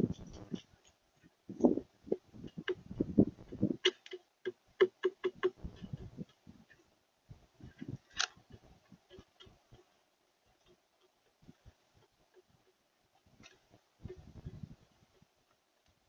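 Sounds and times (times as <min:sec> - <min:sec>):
taps and clicks at bird feeder: 0:03.8 - 0:06.4.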